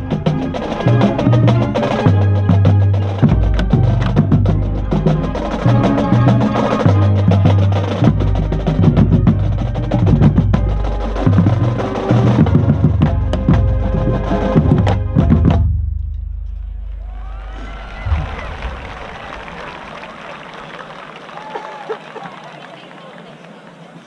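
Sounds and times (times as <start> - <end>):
low brass notes: 0.0 - 15.6
snare and bass drums: 0.0 - 17.0.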